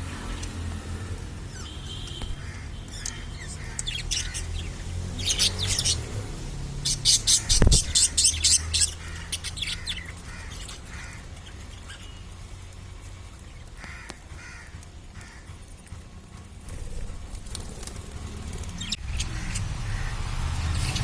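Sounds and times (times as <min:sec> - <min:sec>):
steady low hum: 0:00.0 - 0:21.0
budgerigars chirping: 0:01.0 - 0:06.1, 0:06.8 - 0:12.3, 0:18.8 - 0:21.0.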